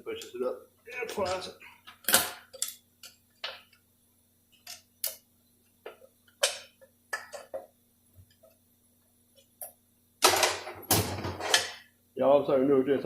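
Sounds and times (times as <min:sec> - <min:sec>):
metal tools clicking and clinking: 0:02.0 - 0:03.2.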